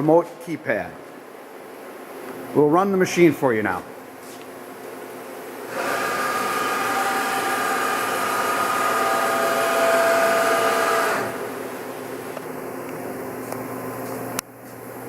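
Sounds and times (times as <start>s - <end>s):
milling machine motor whine: 5.7s - 11.9s.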